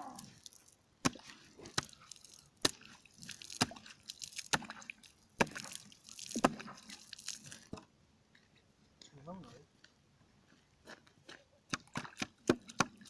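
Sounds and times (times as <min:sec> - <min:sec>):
dripping slushy water: 0:00.0 - 0:07.7
chopping blows on wet ice: 0:05.4 - 0:05.7.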